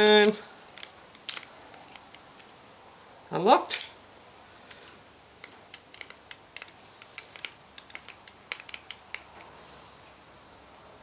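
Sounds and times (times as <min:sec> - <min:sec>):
metallic clicks of key in lock: 0:05.4 - 0:09.5.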